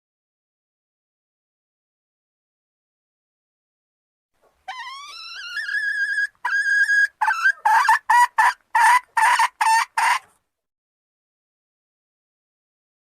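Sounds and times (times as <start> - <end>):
hen cackling: 4.6 - 10.4.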